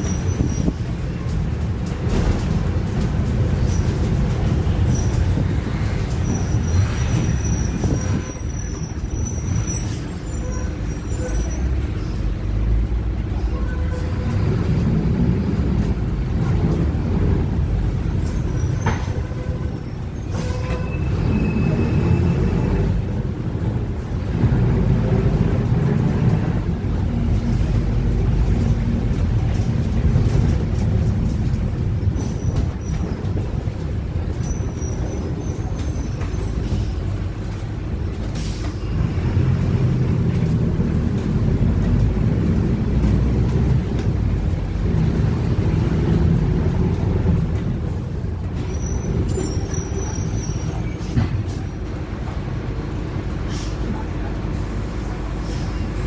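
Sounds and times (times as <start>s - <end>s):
bus engine drone: 0.0s - 56.0s
faint body squeaks: 48.6s - 51.2s.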